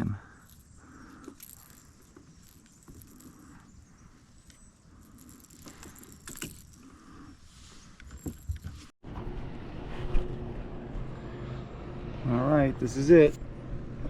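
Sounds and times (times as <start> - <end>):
knocks and rustles of handling: 7.9 - 9.0.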